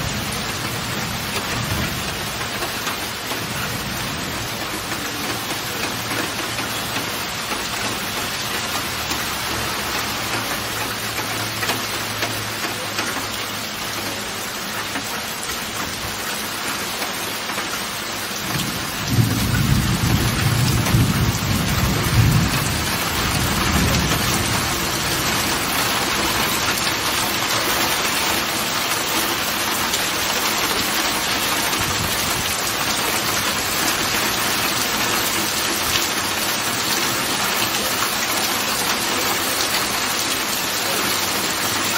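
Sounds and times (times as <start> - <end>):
heavy rain: 0.0 - 41.9
thunder rumbling: 18.4 - 27.0.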